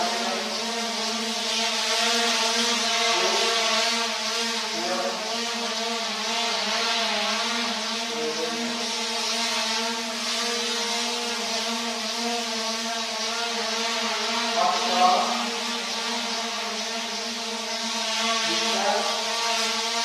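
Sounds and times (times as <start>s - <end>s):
model helicopter motor whine: 0.0s - 20.0s.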